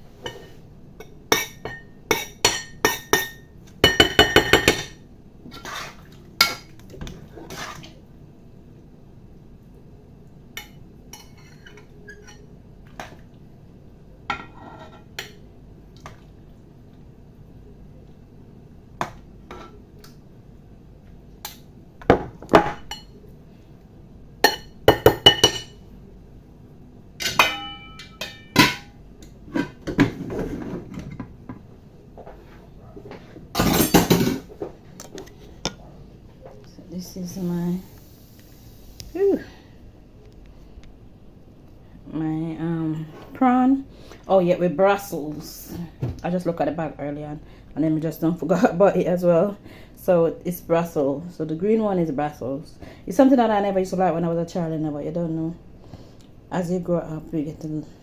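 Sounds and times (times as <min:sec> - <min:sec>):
utensils knocking on pots and dishes: 0:01.0 - 0:05.0, 0:24.4 - 0:25.8, 0:27.2 - 0:29.0, 0:33.6 - 0:34.5.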